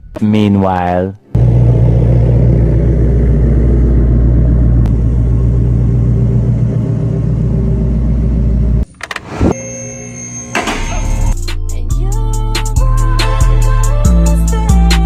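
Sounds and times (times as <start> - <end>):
vehicle engine rumbling: 1.4 - 9.7.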